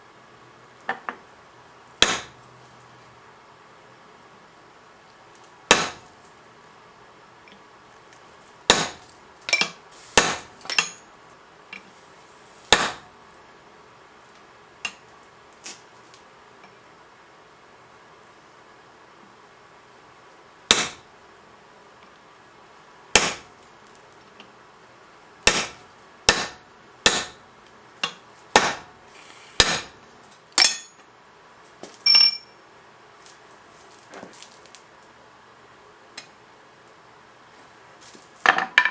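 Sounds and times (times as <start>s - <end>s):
hammer striking steel: 2.0s - 2.9s, 5.7s - 6.2s, 8.7s - 11.2s, 12.7s - 13.8s, 20.7s - 21.5s, 23.2s - 24.0s, 25.5s - 29.0s, 29.6s - 32.6s
metal clank: 8.8s - 11.2s.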